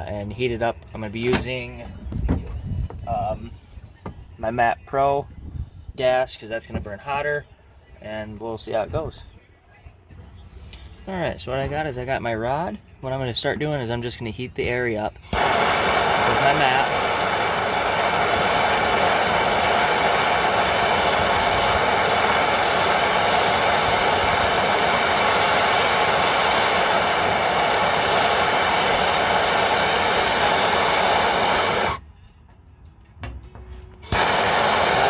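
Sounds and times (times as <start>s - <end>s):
gas torch flame rushing: 15.2s - 32.0s, 34.0s - 35.0s.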